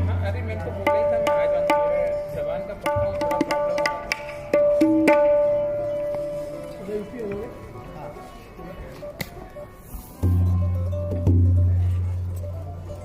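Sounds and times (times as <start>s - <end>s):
tabla strokes ringing: 0.0s - 6.3s, 10.2s - 12.3s.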